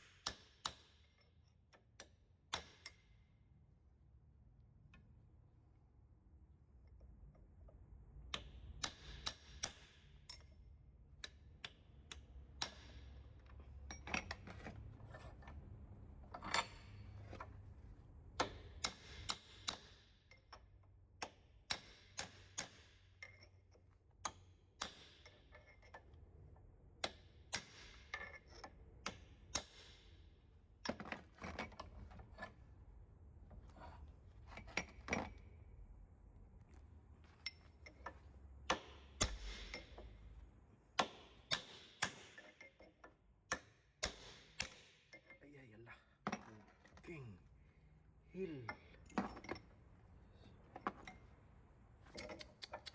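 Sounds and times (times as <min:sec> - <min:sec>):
hand tools clicking and tapping: 0:37.3 - 0:40.2, 0:41.0 - 0:45.4, 0:52.0 - 0:52.9.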